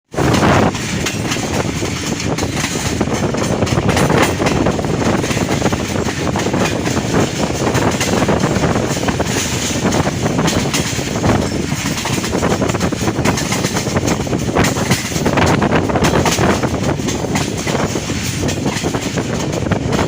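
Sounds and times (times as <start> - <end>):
train wheels rumbling on rails: 0.1 - 20.0
sharp clicks and clatters: 0.2 - 20.0.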